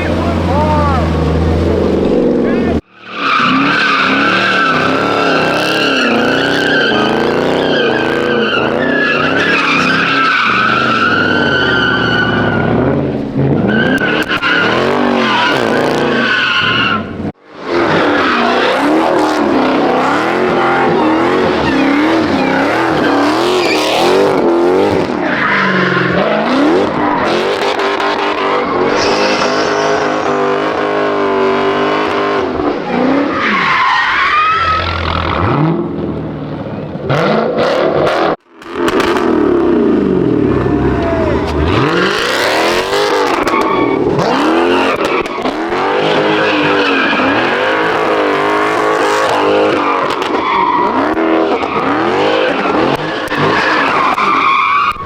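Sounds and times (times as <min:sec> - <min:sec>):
car engine revving: 0:00.0 - 0:02.8, 0:34.7 - 0:50.2.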